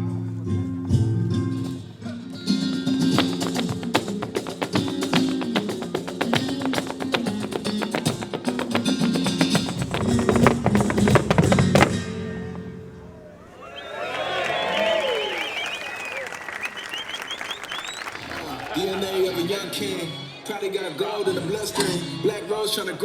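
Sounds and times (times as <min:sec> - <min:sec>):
flamenco acoustic guitar: 0:00.0 - 0:13.2.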